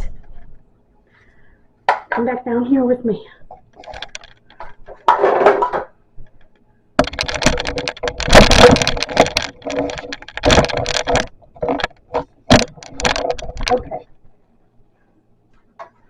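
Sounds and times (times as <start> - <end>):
hard plastic stands clattering: 3.5 - 14.2.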